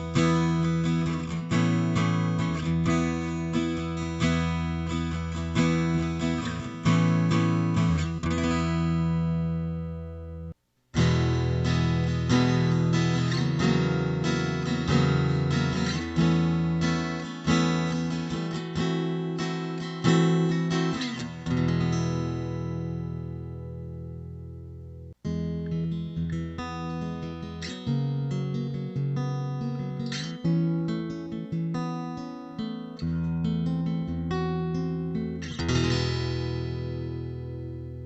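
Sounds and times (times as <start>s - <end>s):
acoustic guitar strumming chords: 0.0s - 24.2s.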